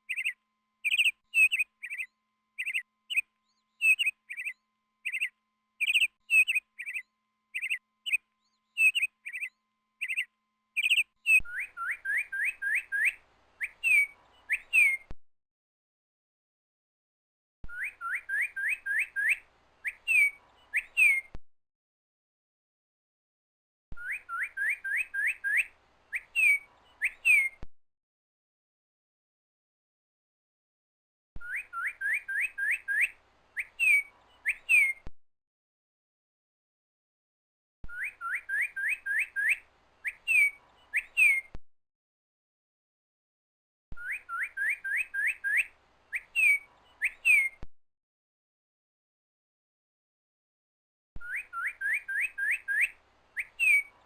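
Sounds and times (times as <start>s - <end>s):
bird whistling: 0.1s - 15.1s, 17.7s - 21.3s, 24.0s - 27.6s, 31.4s - 35.1s, 37.9s - 41.6s, 44.0s - 47.6s, 51.2s - 54.0s.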